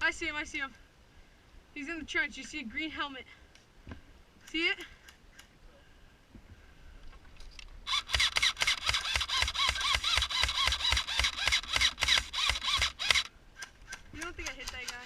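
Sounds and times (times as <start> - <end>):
airsoft gun firing: 7.9 - 15.0.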